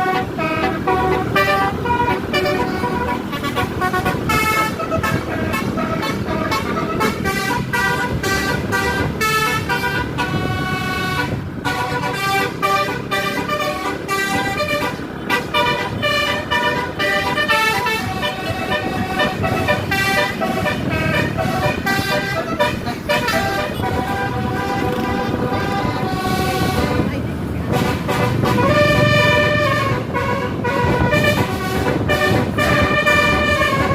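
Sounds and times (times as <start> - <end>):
bus horn playing a tune: 0.0 - 33.9.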